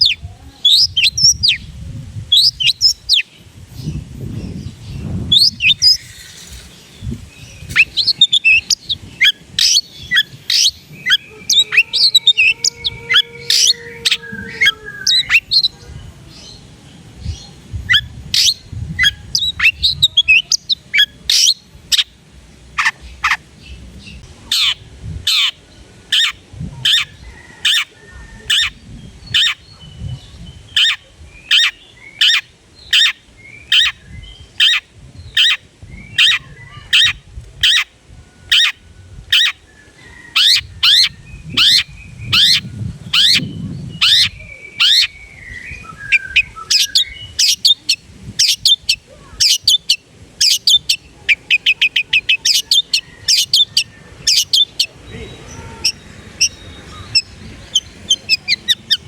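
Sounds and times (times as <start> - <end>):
soft bird chattering: 5.3 - 15.8, 17.9 - 22.1, 24.5 - 37.9, 38.5 - 59.0
bird song sharp downward notes: 38.5 - 59.0.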